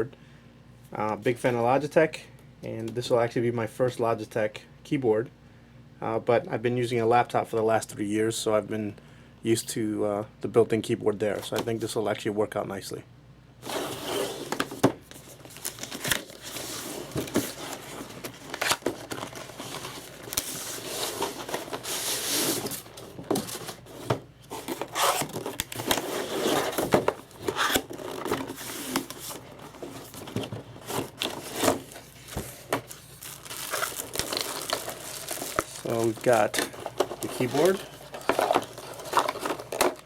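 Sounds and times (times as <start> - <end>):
plastic and paper crinkling: 13.9 - 40.0.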